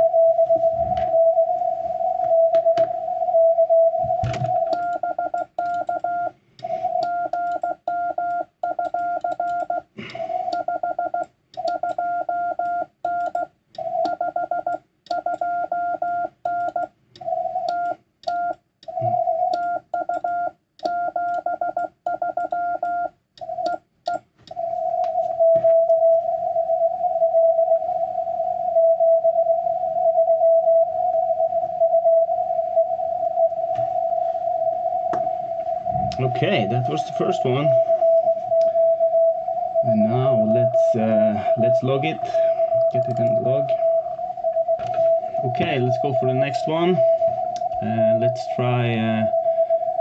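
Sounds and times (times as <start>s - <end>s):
morse code tones: 0.0s - 50.0s.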